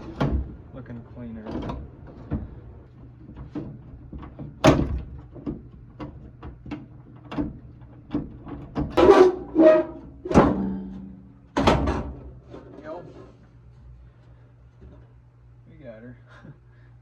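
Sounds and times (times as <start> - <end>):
metal drawer knocking and rattling: 0.0 - 0.6, 1.4 - 2.6, 3.2 - 12.7
ringing metal clanks: 9.0 - 11.4
sharp metal bang: 9.0 - 11.9.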